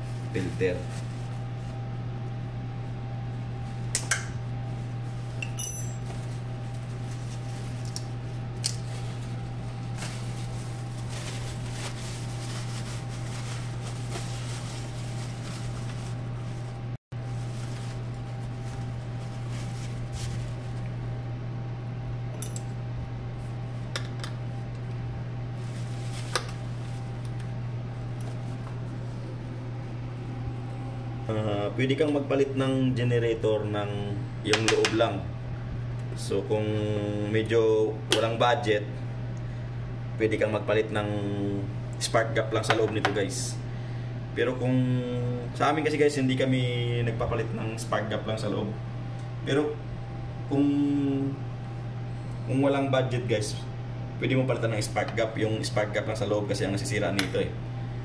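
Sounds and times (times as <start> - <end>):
low machine hum: 0.0 - 58.0.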